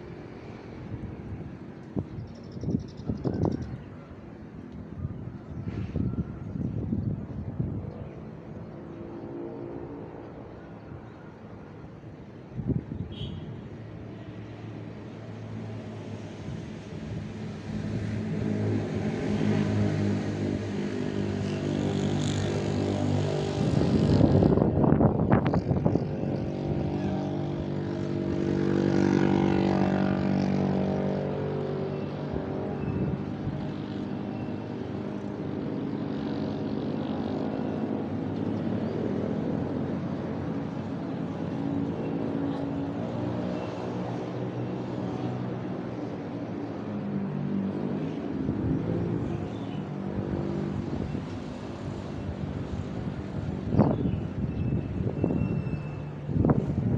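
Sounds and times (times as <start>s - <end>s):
vehicles driving past: 0.0s - 56.9s.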